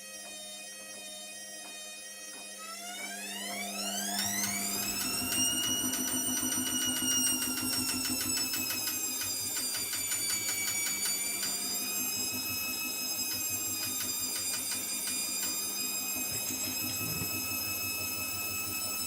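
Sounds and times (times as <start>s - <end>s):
washing machine motor whining: 0.2s - 19.0s.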